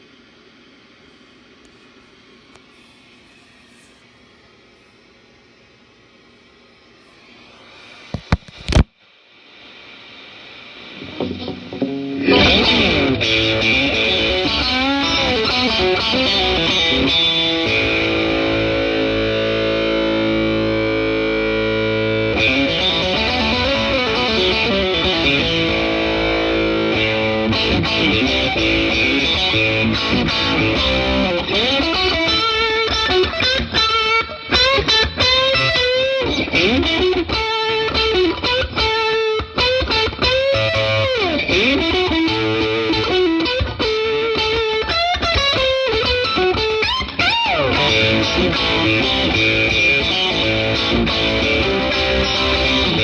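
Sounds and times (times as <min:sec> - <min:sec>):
overdriven electric guitar: 0:10.8 - 0:53.0.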